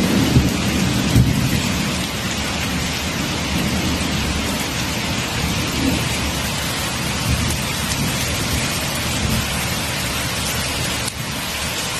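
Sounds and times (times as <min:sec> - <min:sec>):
rain falling: 0:00.0 - 0:11.9.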